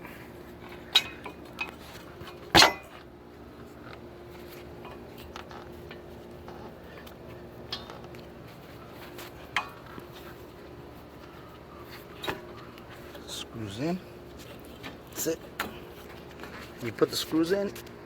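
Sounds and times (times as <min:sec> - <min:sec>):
faint steady hum: 0:00.0 - 0:18.0
metal clinks and knocks: 0:00.8 - 0:03.1.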